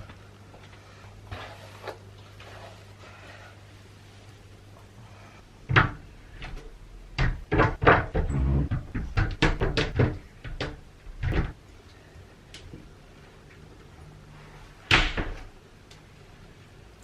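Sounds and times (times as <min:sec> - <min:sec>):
household knocks and bangs: 0:07.2 - 0:11.6.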